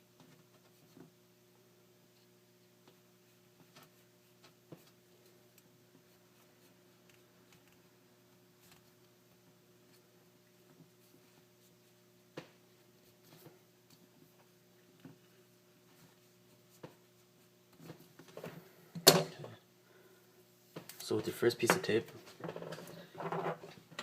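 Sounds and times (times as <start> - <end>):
tape and wires clicking and rustling: 17.7 - 19.6.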